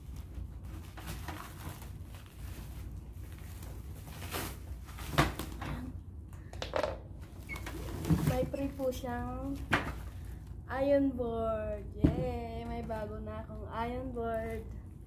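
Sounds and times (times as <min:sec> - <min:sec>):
cardboard packaging rustling: 0:00.0 - 0:05.8.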